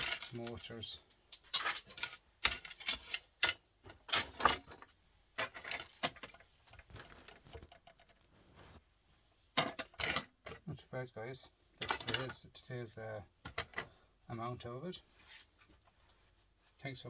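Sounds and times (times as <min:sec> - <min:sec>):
small metal parts clinking: 0:00.0 - 0:04.8.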